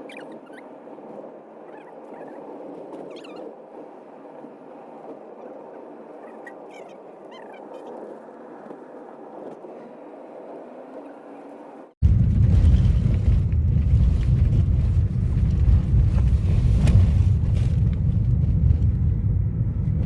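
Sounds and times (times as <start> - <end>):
small birds chirping: 0.0 - 0.6, 3.1 - 3.5, 6.2 - 8.0.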